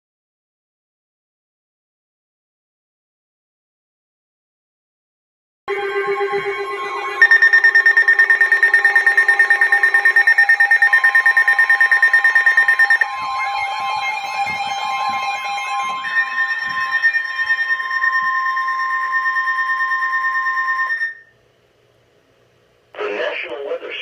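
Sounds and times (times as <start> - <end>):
electronic alert tones: 5.7 - 21.2
warbling tones: 5.7 - 21.2
rapidly pulsing tone: 5.7 - 21.3.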